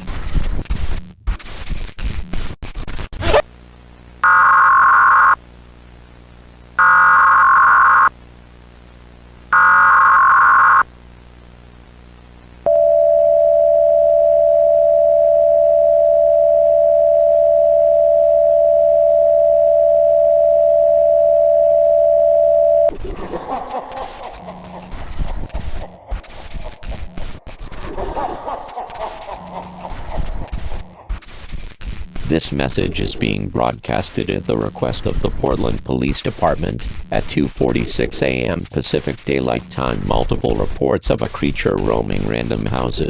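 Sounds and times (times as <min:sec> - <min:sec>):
buzzy data bursts: 0:00.0 - 0:03.4, 0:22.9 - 0:43.0
crackling static: 0:00.0 - 0:12.7, 0:22.9 - 0:43.0
steady attention tone: 0:12.6 - 0:31.5.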